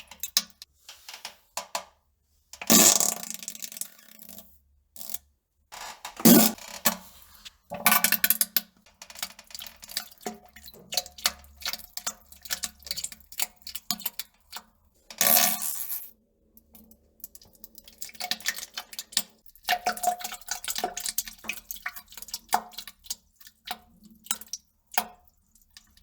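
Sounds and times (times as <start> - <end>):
flatulence: 2.7 - 3.3, 6.2 - 6.6
plops and splashes in toilet: 7.7 - 15.6, 16.6 - 26.0.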